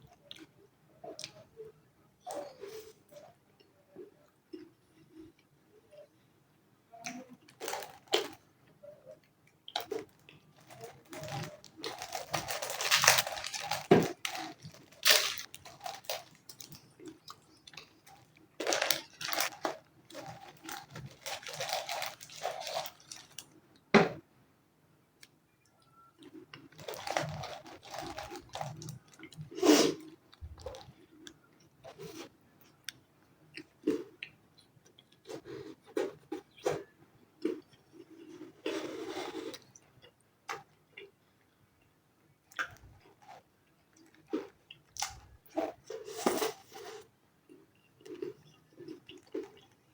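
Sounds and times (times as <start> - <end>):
crunchy chewing: 9.6 - 23.5, 26.2 - 41.1, 42.5 - 49.9.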